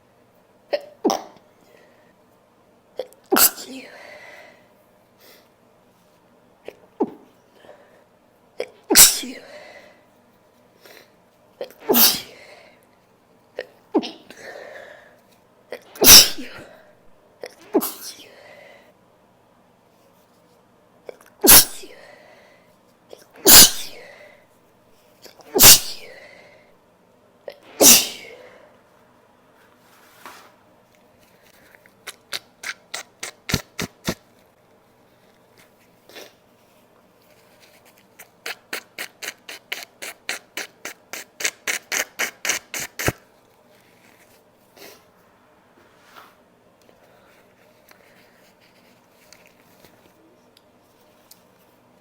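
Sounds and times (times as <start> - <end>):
woman sneezing: 3.3 - 4.0, 8.6 - 9.5, 11.6 - 12.5, 15.8 - 16.8, 17.4 - 18.4, 21.4 - 22.1, 23.4 - 24.2, 25.5 - 26.2, 27.6 - 28.5
quick sharp sniffles: 8.9 - 9.6, 11.8 - 12.6, 16.0 - 16.8, 21.4 - 22.2, 23.4 - 24.4, 25.5 - 26.4, 27.7 - 28.6, 31.3 - 34.3, 37.3 - 45.2.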